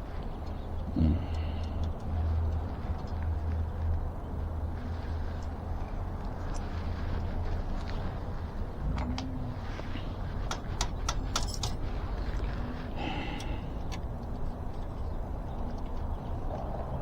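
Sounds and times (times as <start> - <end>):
light sharp metal clicks: 10.4 - 12.5.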